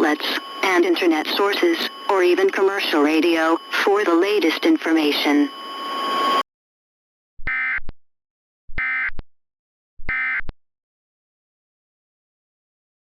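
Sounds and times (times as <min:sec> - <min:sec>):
buzzy digital data bursts: 0:00.0 - 0:06.4.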